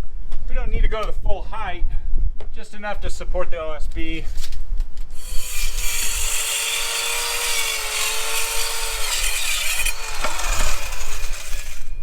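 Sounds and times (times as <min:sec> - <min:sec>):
power saw cutting wood: 0:05.2 - 0:12.0.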